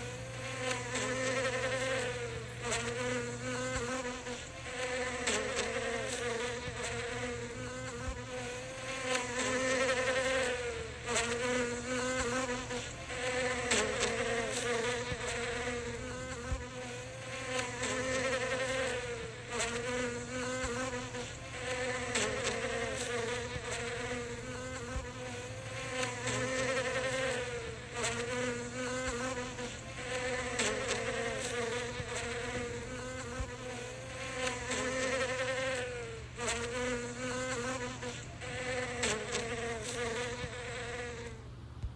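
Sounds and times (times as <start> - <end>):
bee buzzing: 0.0 - 41.5.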